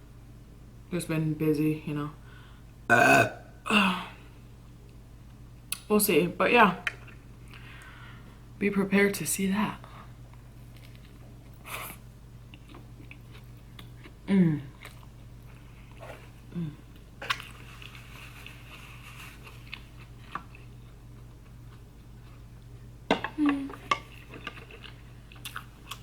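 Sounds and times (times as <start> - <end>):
person chewing food: 12.5 - 22.8, 23.7 - 26.0.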